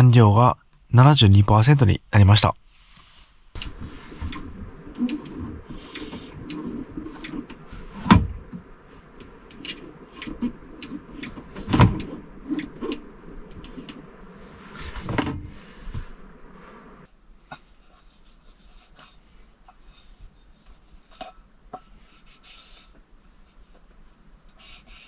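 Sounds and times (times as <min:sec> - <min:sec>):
loud thumps: 0:03.6 - 0:17.0.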